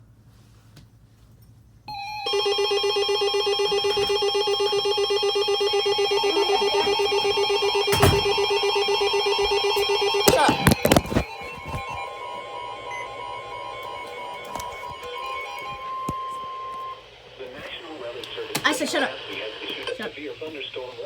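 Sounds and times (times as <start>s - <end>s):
pulsing electronic alarm tone: 1.9s - 17.0s.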